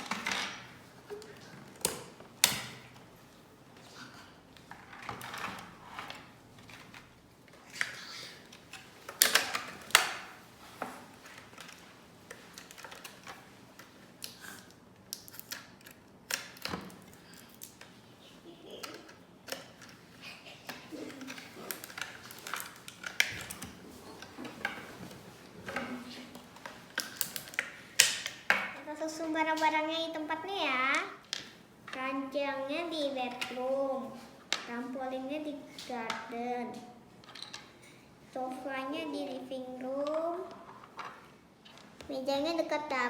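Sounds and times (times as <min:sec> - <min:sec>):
sharp plastic snaps: 0:15.0 - 0:17.9, 0:26.9 - 0:28.6.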